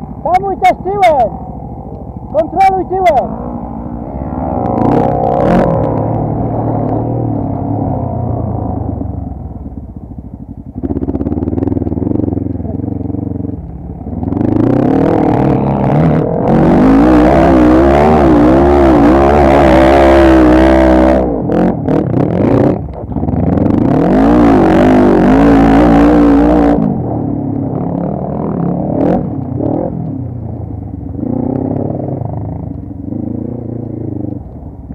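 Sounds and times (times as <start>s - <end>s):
quad bike engine revving: 2.2s - 9.8s, 10.7s - 34.5s.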